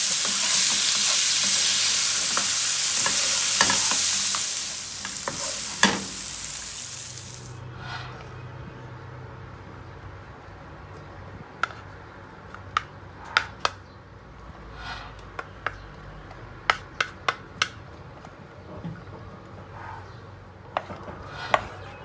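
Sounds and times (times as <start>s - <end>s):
kitchen utensils knocking: 0.0s - 7.5s.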